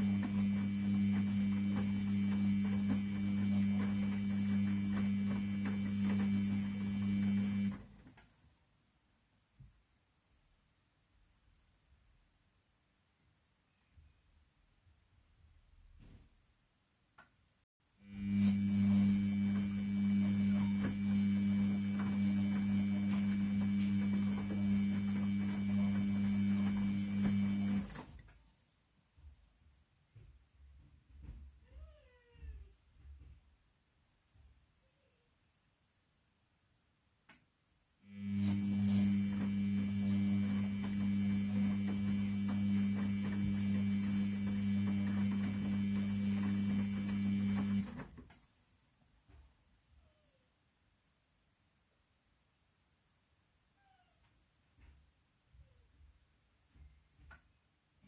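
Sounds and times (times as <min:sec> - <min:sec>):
washing machine motor hum: 0:00.0 - 0:08.2, 0:18.0 - 0:28.3, 0:38.1 - 0:48.3.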